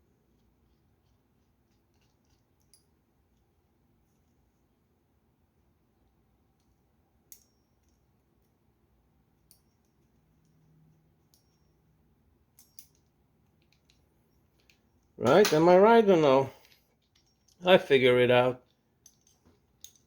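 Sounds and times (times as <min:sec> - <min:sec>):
faint metal clicks of reel parts: 0:00.3 - 0:03.5, 0:06.5 - 0:08.6, 0:09.4 - 0:15.6, 0:16.6 - 0:17.6, 0:18.6 - 0:20.0.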